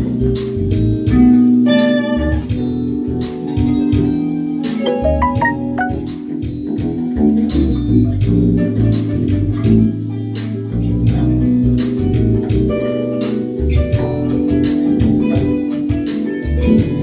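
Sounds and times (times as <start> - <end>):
electric bass line: 4.9 - 6.2
sustained chords: 4.9 - 6.2.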